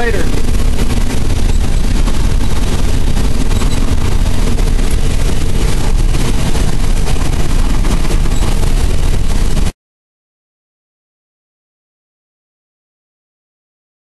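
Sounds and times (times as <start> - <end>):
combine engine and threshing rumble: 0.0 - 9.8.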